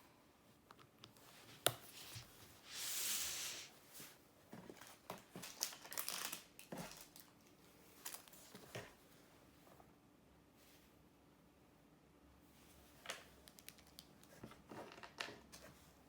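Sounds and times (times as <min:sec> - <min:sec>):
packaging crinkling and clicks: 0:04.8 - 0:08.5.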